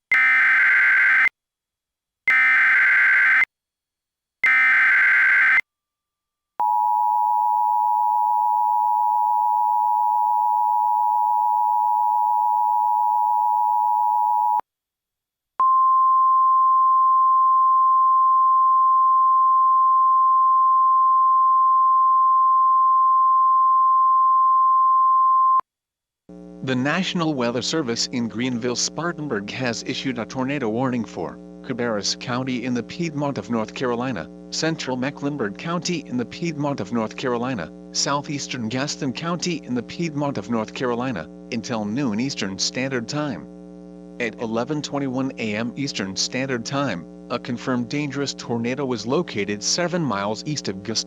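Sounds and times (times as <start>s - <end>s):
steady warning tone: 4.4s - 5.6s.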